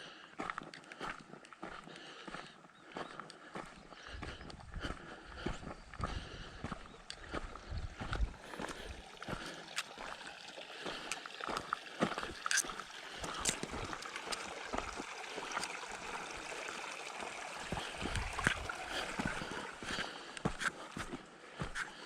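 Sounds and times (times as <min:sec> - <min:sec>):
footsteps crunching on dirt: 0:00.4 - 0:16.4, 0:17.6 - 0:22.0.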